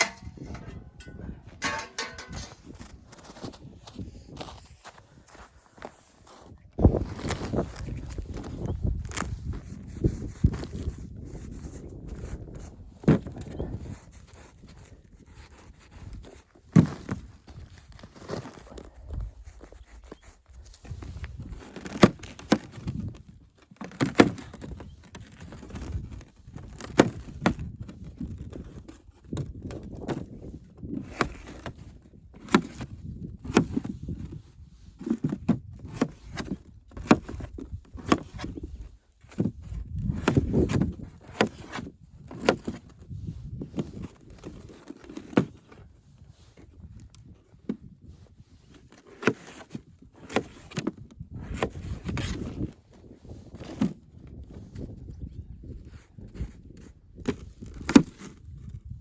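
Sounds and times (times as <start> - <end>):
low rumbling handling noise: 0.0 - 3.0
knocks thuds and scrapes: 0.0 - 4.5, 35.0 - 43.0.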